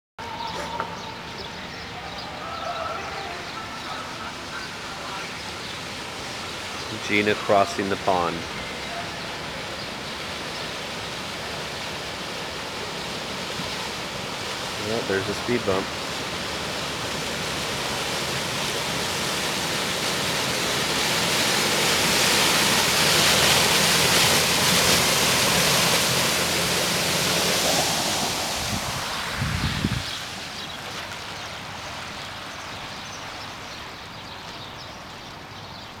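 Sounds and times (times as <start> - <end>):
floodwater rushing and splashing: 0.2 - 36.0
car engine running low: 15.9 - 30.7.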